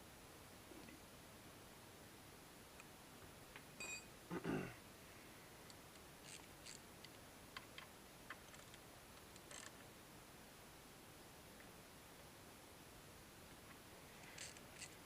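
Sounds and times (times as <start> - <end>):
short creak: 6.2 - 6.8, 9.5 - 9.8, 14.2 - 15.0.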